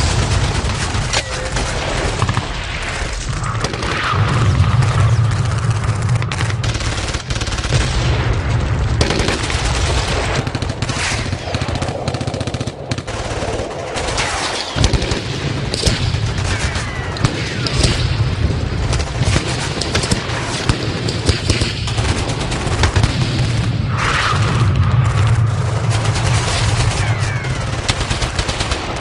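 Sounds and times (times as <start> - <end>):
low rumble: 0.0 - 13.7, 23.1 - 28.3
machine-gun fire: 0.0 - 29.0.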